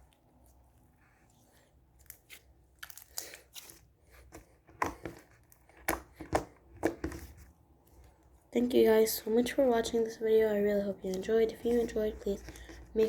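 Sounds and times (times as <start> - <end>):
clay slime clicking and crackling: 0.0 - 8.4.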